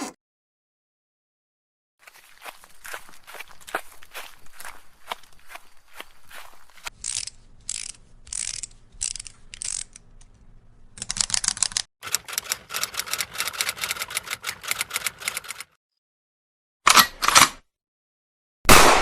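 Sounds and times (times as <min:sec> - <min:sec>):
sharp mechanical clicks: 0:06.9 - 0:10.3, 0:10.9 - 0:15.8.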